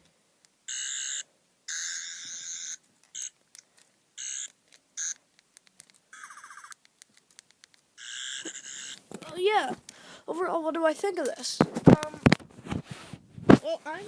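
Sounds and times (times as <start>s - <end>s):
toy electronic warbling buzz: 0.7s - 3.3s, 4.2s - 5.2s, 6.1s - 6.8s, 8.0s - 9.0s
small clicks: 2.2s - 10.0s.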